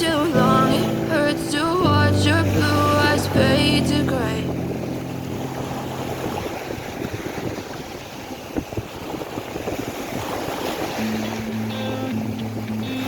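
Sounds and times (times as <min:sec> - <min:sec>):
background music: 0:00.0 - 0:06.0
surf washing on shore: 0:00.0 - 0:13.0
wind buffeting microphone: 0:00.0 - 0:13.0.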